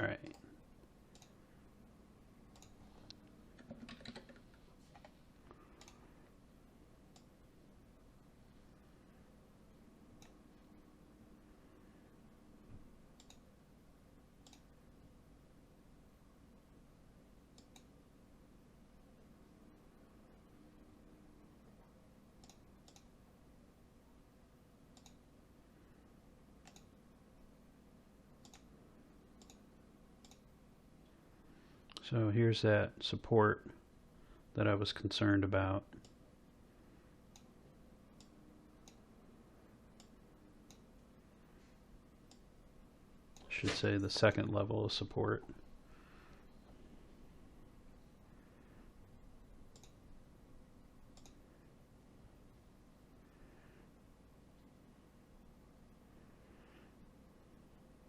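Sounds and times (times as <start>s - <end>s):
computer mouse clicks: 1.1s - 1.4s, 2.5s - 6.1s, 7.1s - 7.4s, 10.2s - 10.4s, 13.1s - 13.5s, 14.4s - 14.7s, 17.5s - 18.0s, 22.4s - 23.2s, 24.9s - 25.2s, 26.6s - 27.0s, 28.4s - 28.7s, 29.4s - 30.5s, 36.0s - 36.2s, 37.3s - 37.6s, 38.2s - 39.0s, 39.9s - 41.0s, 42.2s - 42.5s, 49.7s - 50.0s, 51.1s - 51.4s.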